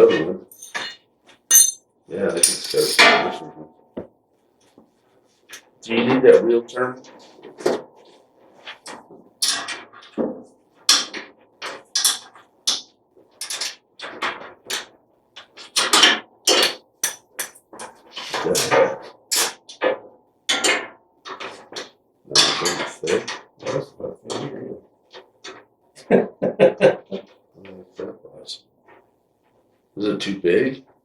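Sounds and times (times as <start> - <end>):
hand tools clanking on metal: 0.5 - 3.5, 10.9 - 19.8, 20.5 - 24.5.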